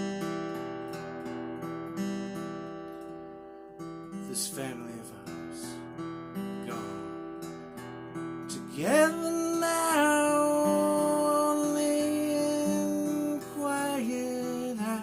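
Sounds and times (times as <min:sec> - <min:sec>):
acoustic guitar strumming chords: 0:00.0 - 0:15.0
person singing folk song: 0:04.1 - 0:05.8, 0:06.4 - 0:15.0.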